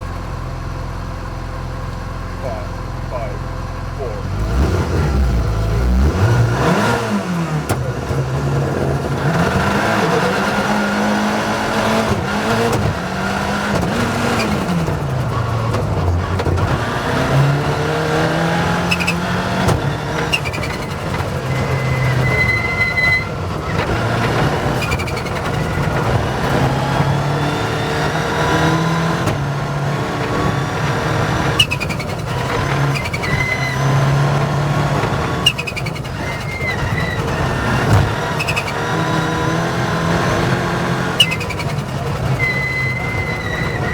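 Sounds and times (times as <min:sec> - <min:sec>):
road noise: 0:00.0 - 0:43.9
rally car engine revving: 0:01.0 - 0:43.9
short high squeaks: 0:20.3 - 0:23.4, 0:31.6 - 0:32.2, 0:35.4 - 0:38.9, 0:41.2 - 0:43.9.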